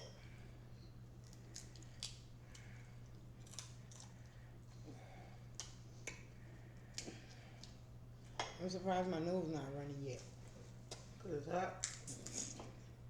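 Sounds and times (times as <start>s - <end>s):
low steady hum: 0.0s - 13.0s
crab shell cracking: 1.2s - 2.7s.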